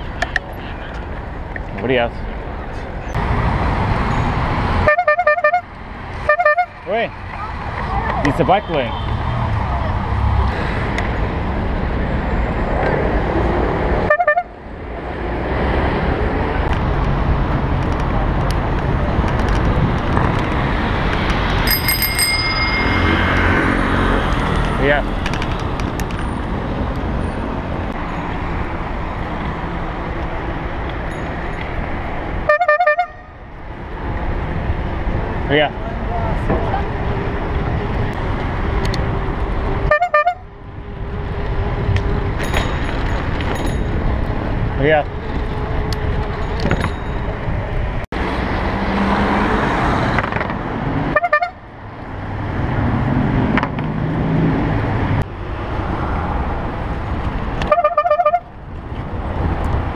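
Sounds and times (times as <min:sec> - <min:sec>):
road traffic: 0:00.0 - 0:59.9
bicycle horn tooting: 0:04.8 - 0:05.6, 0:06.3 - 0:06.8, 0:14.1 - 0:14.5, 0:32.5 - 0:33.4, 0:39.9 - 0:40.4, 0:51.1 - 0:51.6, 0:57.7 - 0:58.5
bicycle bell ringing: 0:21.6 - 0:24.0, 0:31.0 - 0:31.8, 0:42.4 - 0:44.2, 0:46.4 - 0:47.6.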